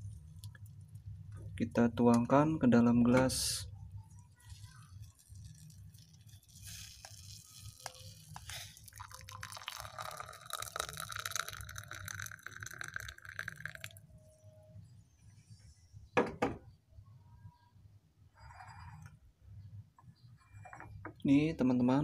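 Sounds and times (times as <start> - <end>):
liquid pouring into a glass: 4.4 - 14.0.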